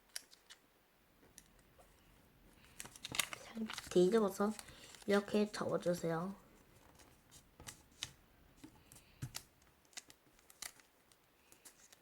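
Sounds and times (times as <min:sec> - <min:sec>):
paper rustling and crinkling: 0:02.5 - 0:12.0.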